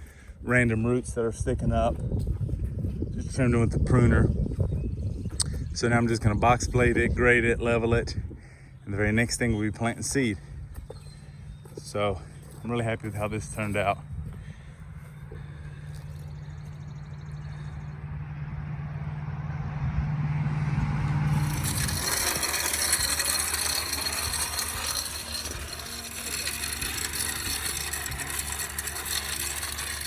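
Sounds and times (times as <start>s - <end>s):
rattling scraping mechanical noise: 0.0s - 18.0s, 20.8s - 30.0s
tractor engine running: 8.9s - 19.2s, 20.5s - 30.0s.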